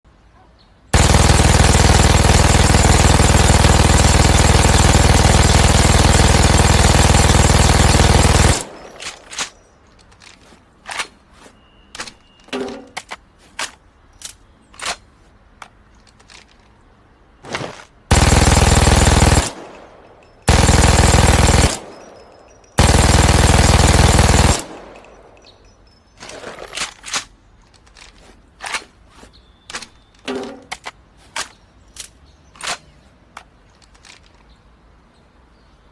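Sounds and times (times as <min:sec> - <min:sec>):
machine gun firing bursts: 0:00.9 - 0:09.6, 0:18.1 - 0:25.7.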